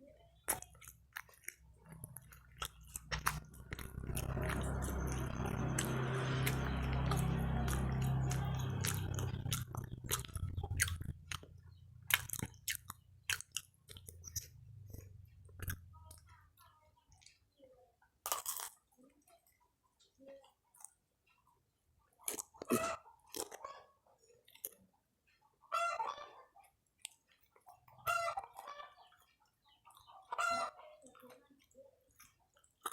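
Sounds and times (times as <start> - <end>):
person chewing crunchy snacks: 0.4 - 16.2, 18.2 - 18.9, 22.2 - 23.7, 31.6 - 32.9
low hum: 2.9 - 11.9.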